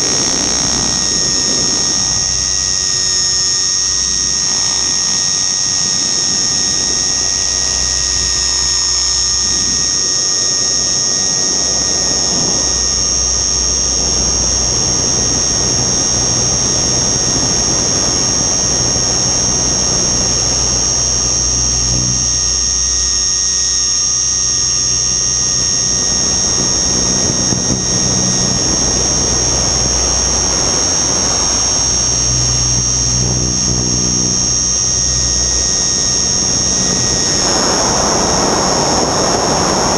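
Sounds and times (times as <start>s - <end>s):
model helicopter whine: 0.0s - 39.9s
rotor hum: 0.0s - 39.9s
rushing wind: 36.1s - 39.9s.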